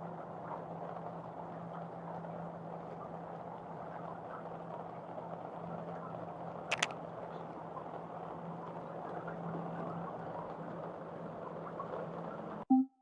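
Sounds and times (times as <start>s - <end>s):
steady rain: 0.2s - 12.6s
sharp clicks: 6.7s - 6.9s.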